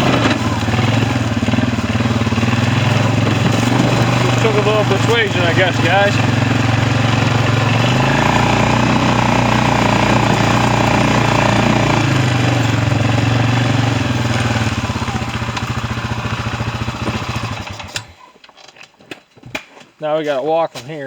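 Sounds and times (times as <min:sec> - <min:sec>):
small engine running and stopping: 0:00.0 - 0:18.2.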